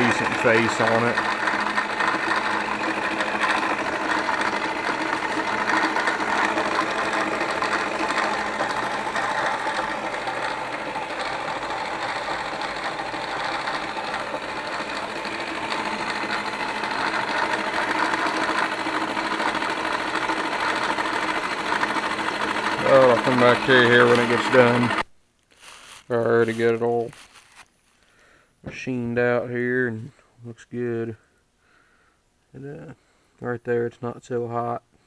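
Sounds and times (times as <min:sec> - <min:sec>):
milling machine cutting metal: 0:00.0 - 0:25.0.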